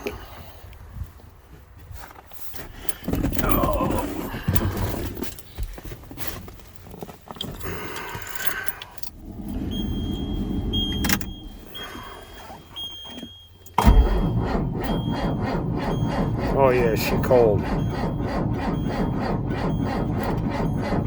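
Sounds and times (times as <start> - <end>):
keys rustling: 2.0 - 13.8
diesel engine cranking: 2.4 - 21.0
warning buzzer beeping: 9.6 - 21.0.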